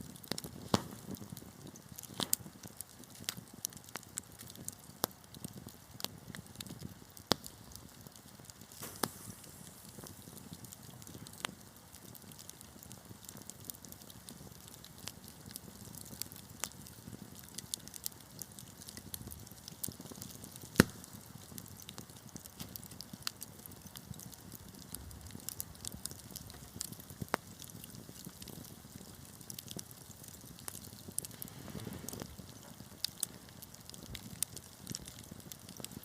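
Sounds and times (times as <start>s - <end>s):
low rumble of burning: 0.0s - 36.0s
wood fire crackling: 0.0s - 36.0s
loud pop from fire: 0.3s - 2.5s, 6.6s - 12.6s, 19.8s - 23.4s, 28.1s - 35.8s.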